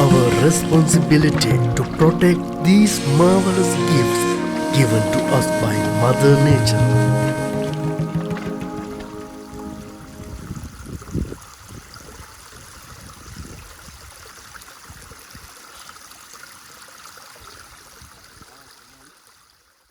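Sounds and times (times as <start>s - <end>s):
waterfall rushing: 0.0s - 10.7s.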